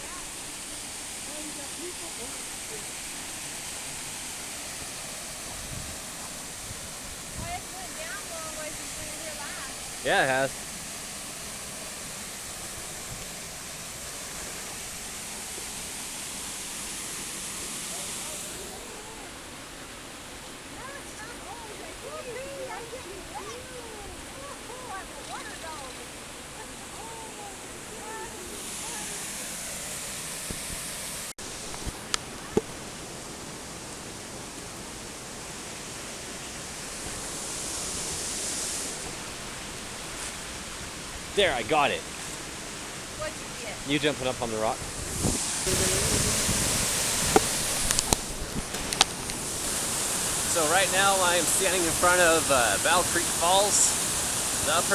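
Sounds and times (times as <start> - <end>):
waterfall rushing: 0.0 - 54.9.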